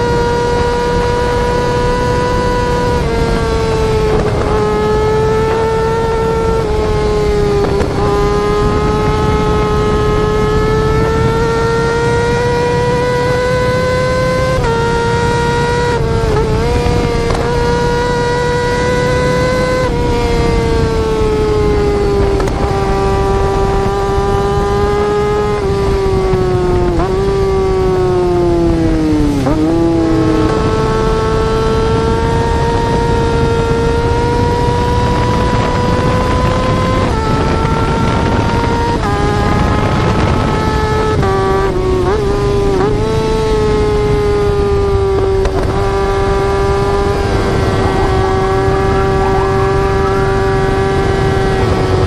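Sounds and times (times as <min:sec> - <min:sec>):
motorcycle exhaust at high revs: 0:00.0 - 0:52.0.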